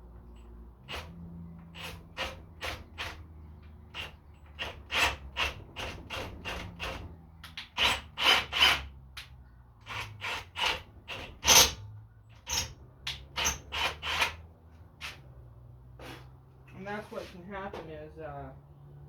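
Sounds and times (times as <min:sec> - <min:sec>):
rasping scraping on metal: 0:00.8 - 0:09.0, 0:09.8 - 0:14.4.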